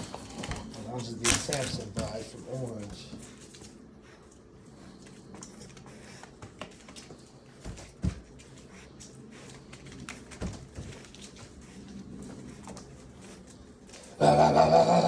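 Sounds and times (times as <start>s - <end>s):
puppies scuffling: 0.0s - 14.1s.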